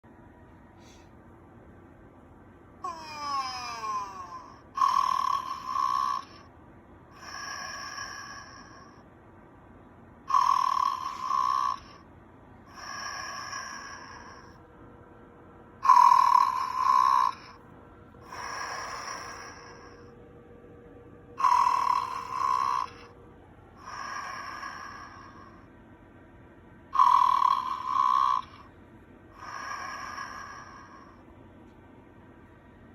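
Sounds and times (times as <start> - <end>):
toy snoring: 2.8 - 6.4, 7.2 - 9.0, 10.3 - 12.0, 12.7 - 14.6, 15.8 - 17.6, 18.2 - 20.1, 21.4 - 23.1, 23.8 - 25.7, 26.9 - 28.7, 29.4 - 31.2.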